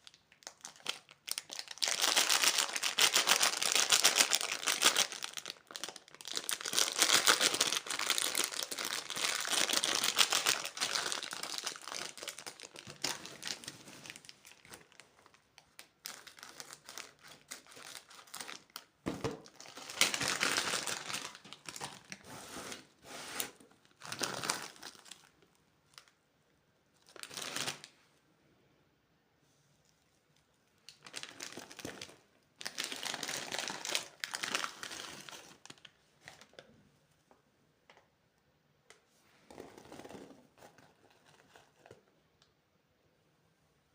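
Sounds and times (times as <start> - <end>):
plastic wrappers crinkling: 0.0 - 22.8, 23.7 - 26.2, 27.0 - 27.9, 30.8 - 36.7.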